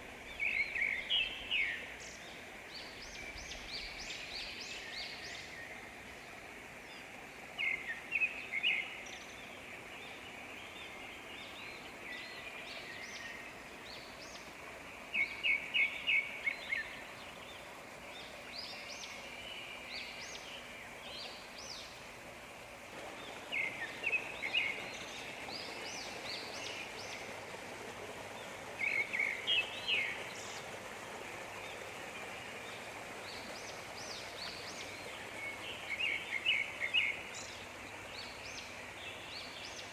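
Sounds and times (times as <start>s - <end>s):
birds calling: 7.6s - 39.9s
waterfall rushing: 22.4s - 37.1s.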